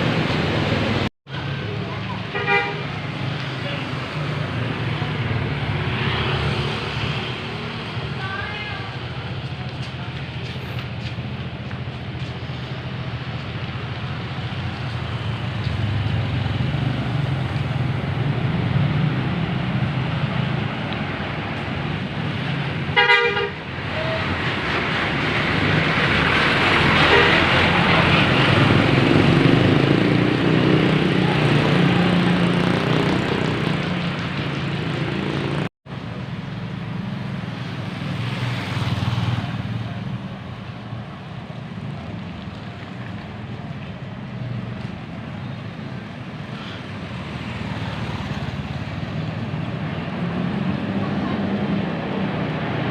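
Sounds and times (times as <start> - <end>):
bus engines running: 0.0 - 52.9
bus horn toot: 2.3 - 2.8, 22.9 - 23.6, 27.0 - 27.5.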